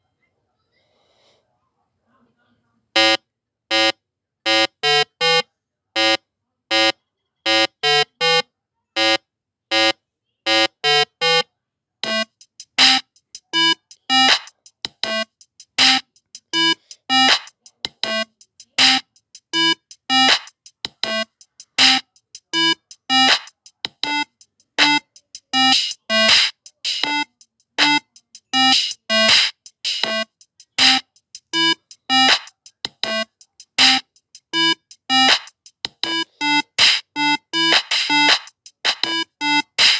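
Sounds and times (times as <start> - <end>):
synthesizer music: 36.0 - 38.4, 39.0 - 39.9.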